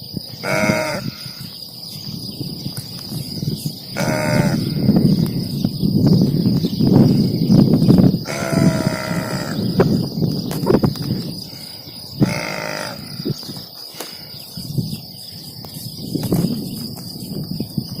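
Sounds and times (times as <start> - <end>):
cattle mooing: 0.4 - 1.3, 4.0 - 4.8, 8.3 - 9.6, 12.2 - 13.2.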